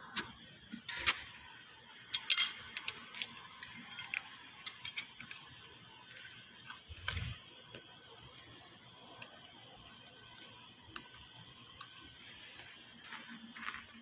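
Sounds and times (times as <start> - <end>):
metal engine parts clinking: 2.0 - 7.4, 10.2 - 10.8.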